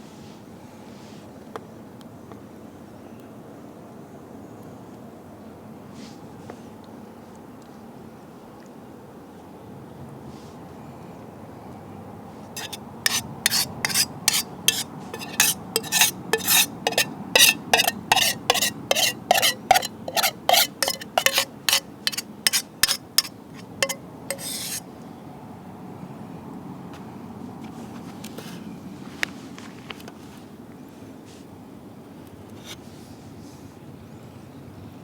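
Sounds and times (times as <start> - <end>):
utensil scraping metal pot: 12.6 - 24.8.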